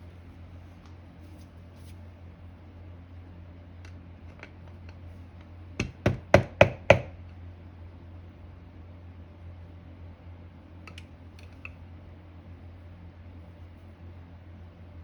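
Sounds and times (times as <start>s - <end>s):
steady low hum: 0.0s - 15.0s
tool tapping on motor: 5.8s - 7.2s.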